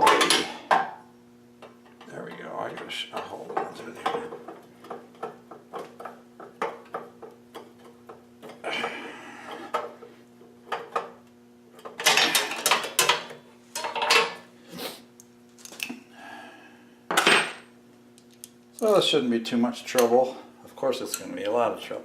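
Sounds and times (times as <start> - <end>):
tools clicking and tapping on metal: 11.8 - 14.4, 21.1 - 21.5.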